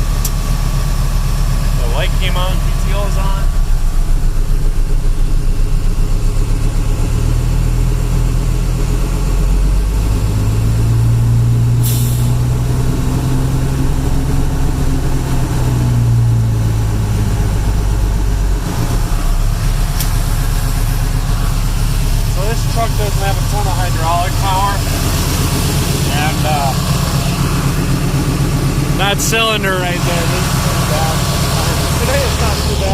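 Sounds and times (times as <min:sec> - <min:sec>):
truck engine running under load: 0:00.0 - 0:32.9
short hiss: 0:11.8 - 0:12.3.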